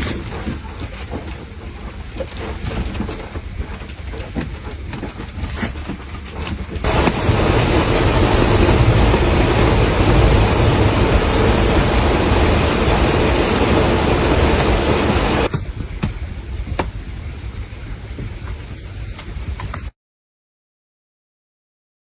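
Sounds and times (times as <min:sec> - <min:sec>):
heavy rain: 0:06.8 - 0:15.5
water dripping: 0:06.8 - 0:15.5.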